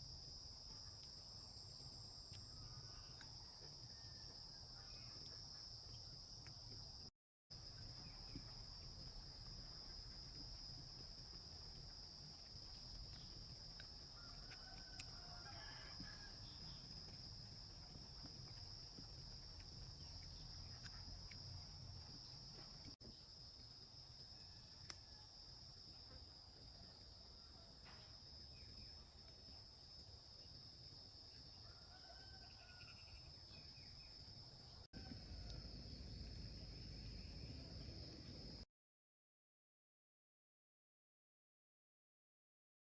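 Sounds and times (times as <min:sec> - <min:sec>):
crickets trilling: 0:07.6 - 0:38.6.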